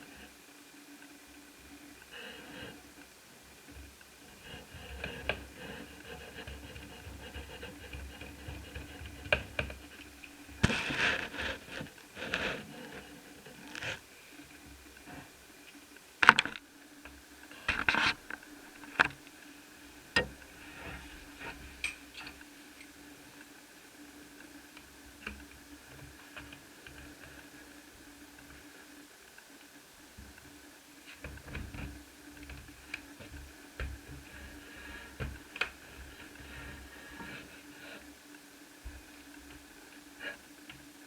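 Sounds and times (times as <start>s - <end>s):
small parts clicking and tapping: 21.8s - 23.0s.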